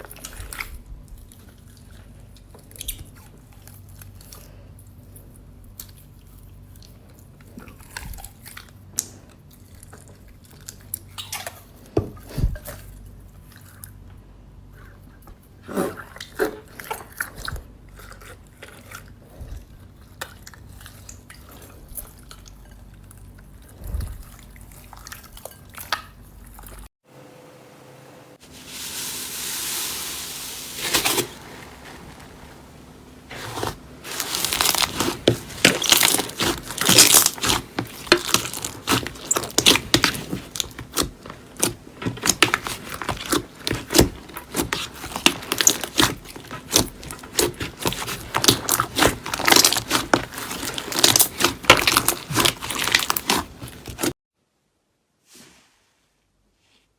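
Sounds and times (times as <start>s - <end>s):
slime squeezed by hand: 33.3s - 54.1s.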